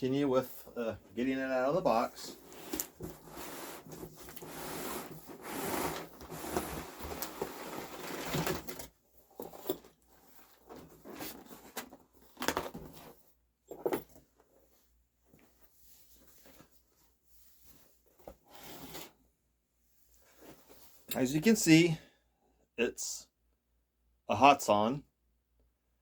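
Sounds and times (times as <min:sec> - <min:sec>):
cardboard box rustling and scraping: 0:02.2 - 0:13.2.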